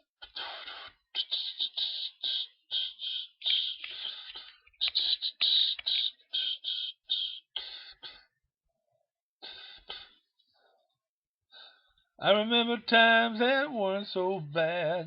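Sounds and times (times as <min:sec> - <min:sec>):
beatbox-like vocal bursts: 0:00.0 - 0:08.2.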